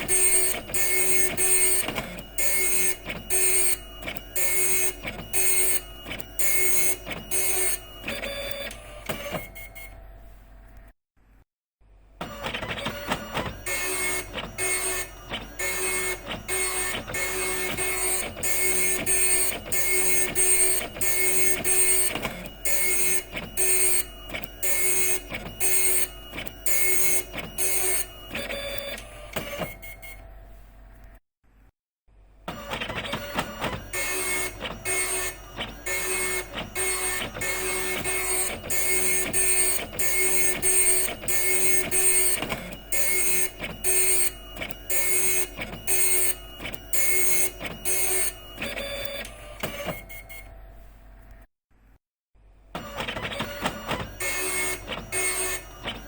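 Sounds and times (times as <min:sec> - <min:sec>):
dot matrix printer printing: 0:00.0 - 0:10.1, 0:12.2 - 0:30.4, 0:32.5 - 0:50.6, 0:52.8 - 0:56.0.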